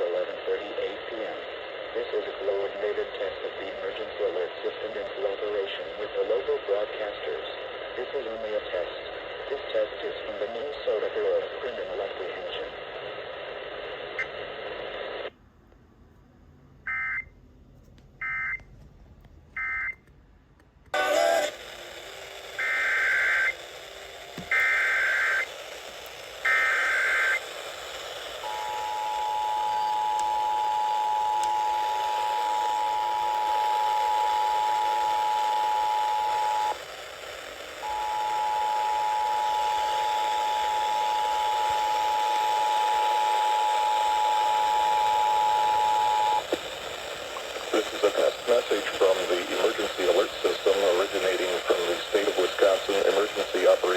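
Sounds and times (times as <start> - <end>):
radio hiss: 0.0 - 15.3, 21.0 - 53.9.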